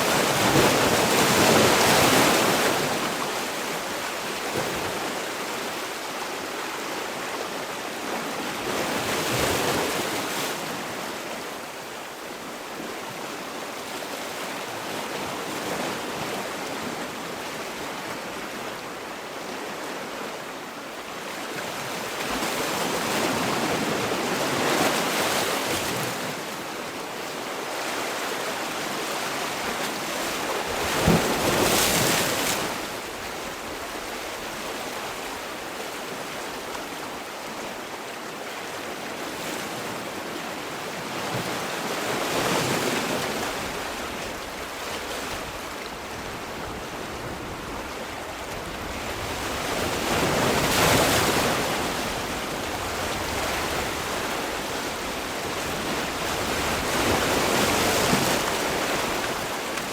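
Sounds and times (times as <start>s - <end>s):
sea waves breaking on shore: 0.0s - 59.9s.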